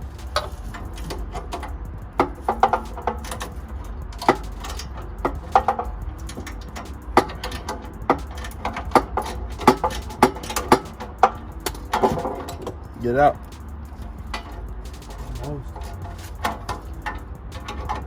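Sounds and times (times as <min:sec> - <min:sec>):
steady low rumble: 0:00.0 - 0:18.0.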